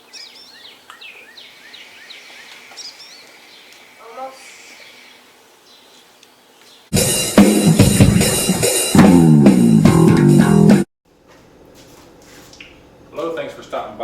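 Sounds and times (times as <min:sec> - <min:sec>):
rock music with electric guitar: 0:07.0 - 0:10.8.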